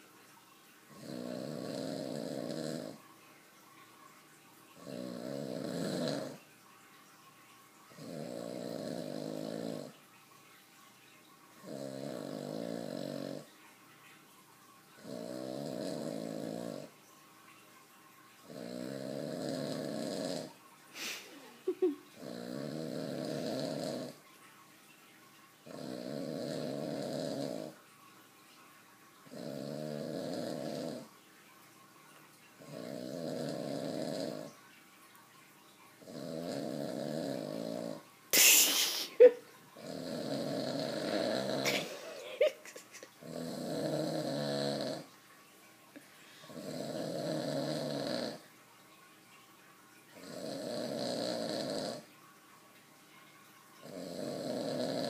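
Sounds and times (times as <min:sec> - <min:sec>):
person snoring: 0:00.9 - 0:03.0, 0:04.8 - 0:06.4, 0:08.0 - 0:09.9, 0:11.6 - 0:13.5, 0:15.0 - 0:16.9, 0:18.5 - 0:21.4, 0:22.2 - 0:24.2, 0:25.7 - 0:27.8, 0:29.3 - 0:31.1, 0:32.6 - 0:34.5, 0:36.0 - 0:42.6, 0:43.2 - 0:45.1, 0:46.4 - 0:48.4, 0:50.2 - 0:52.0, 0:53.8 - 0:55.0.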